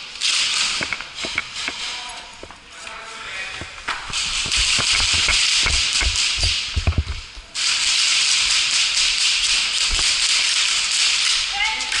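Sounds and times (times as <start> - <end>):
clothing rubbing on microphone: 1.2 - 7.4
knocks and low thumps: 3.6 - 7.4.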